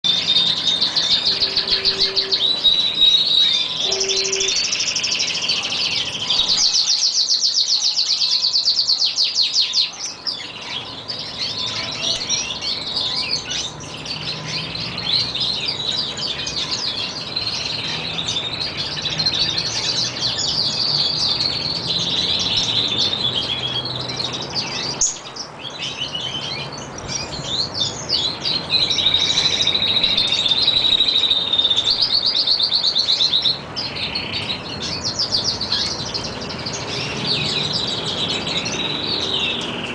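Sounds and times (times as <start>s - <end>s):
canaries singing: 0.0s - 39.9s
fast rolling bird trill: 0.1s - 7.1s.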